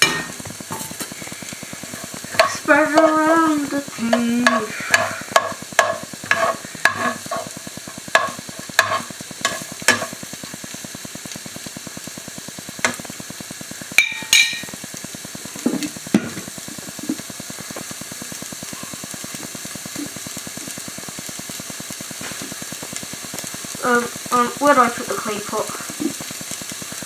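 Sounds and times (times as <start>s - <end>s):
metal spoon scraping a pan: 0.0s - 10.2s
food sizzling in oil: 0.0s - 27.0s.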